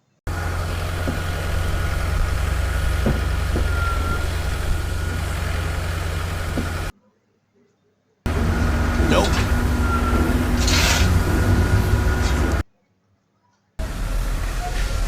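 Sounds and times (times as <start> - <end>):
construction machine engine humming: 0.3 - 6.9, 8.3 - 12.6, 13.8 - 15.0
knocks: 0.9 - 6.9.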